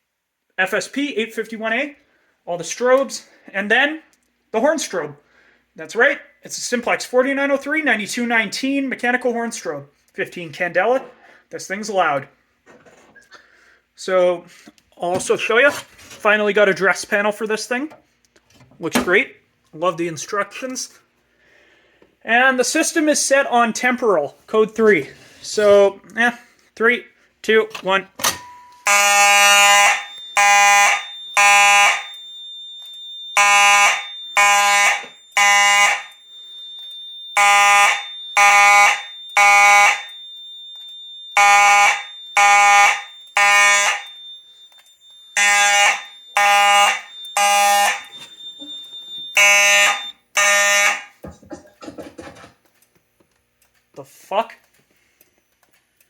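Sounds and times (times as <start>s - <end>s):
mechanical horn buzzing blasts: 28.8s - 32.0s, 33.4s - 36.0s, 41.4s - 44.1s, 45.4s - 48.1s, 49.4s - 51.1s.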